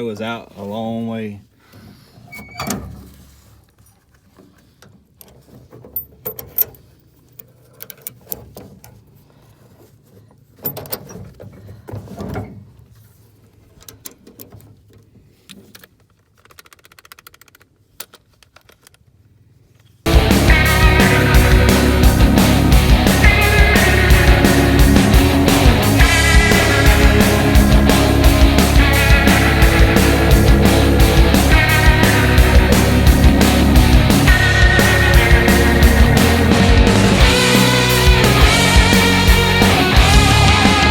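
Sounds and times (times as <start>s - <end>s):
loud rock music: 20.1s - 40.9s.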